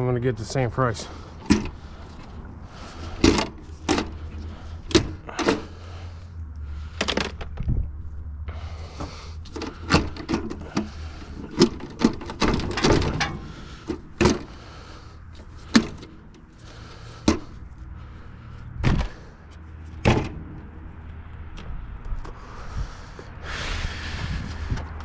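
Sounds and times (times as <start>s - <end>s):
low hum: 1.0s - 11.5s
metal parts knocking and clanking: 3.2s - 5.7s, 9.5s - 14.5s.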